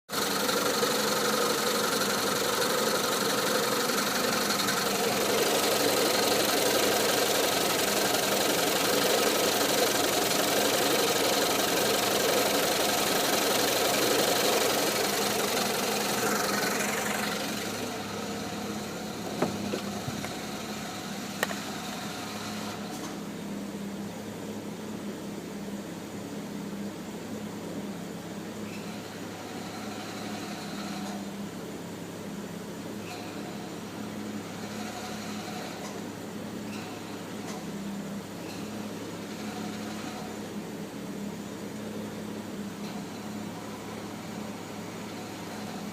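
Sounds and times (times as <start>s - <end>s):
car engine running: 0.1s - 22.1s.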